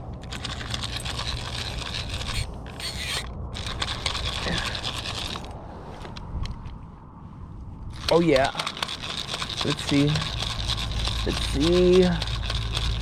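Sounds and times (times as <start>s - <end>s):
fishing reel ratcheting clicks: 0.2s - 5.5s, 8.0s - 13.0s.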